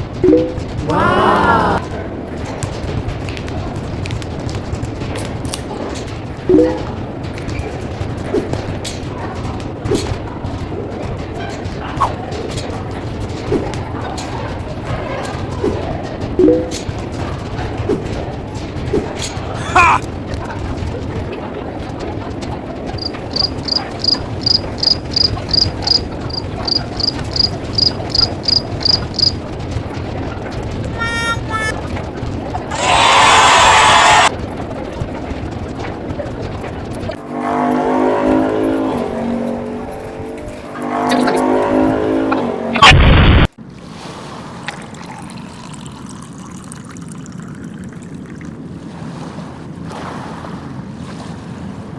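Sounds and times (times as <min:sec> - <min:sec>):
low rumble: 0:00.0 - 0:43.5
cricket chirping: 0:23.0 - 0:29.4
rushing water: 0:43.9 - 0:51.5.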